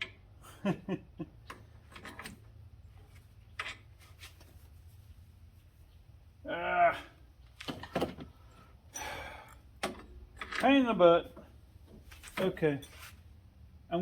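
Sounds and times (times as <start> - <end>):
metal parts and tools clicking: 1.4 - 2.4, 3.5 - 3.9, 9.0 - 10.9
person grunting: 6.4 - 7.2.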